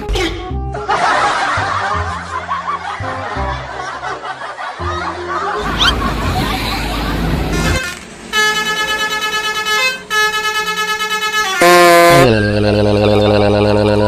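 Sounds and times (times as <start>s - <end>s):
vehicle rumbling by: 5.6s - 10.1s
bus multi-tone horn: 7.5s - 12.8s.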